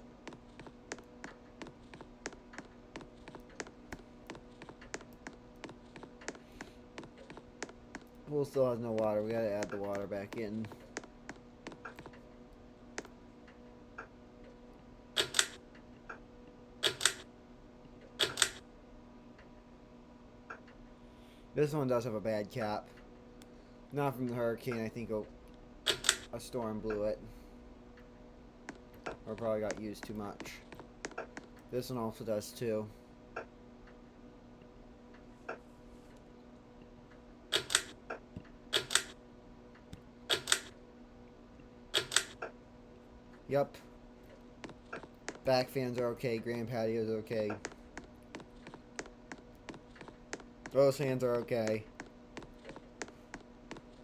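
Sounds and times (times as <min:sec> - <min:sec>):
steady low hum: 0:00.0 - 0:54.0
sharp clicks in pairs: 0:15.2 - 0:15.6, 0:16.8 - 0:17.3, 0:18.2 - 0:18.6, 0:25.9 - 0:26.4, 0:37.5 - 0:39.2, 0:39.8 - 0:40.8, 0:42.0 - 0:42.6.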